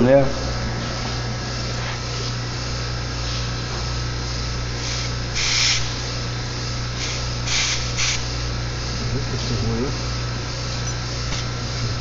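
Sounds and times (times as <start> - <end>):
steady low hum: 0.0 - 12.0
gas hissing from hose: 4.7 - 6.1, 6.9 - 8.3.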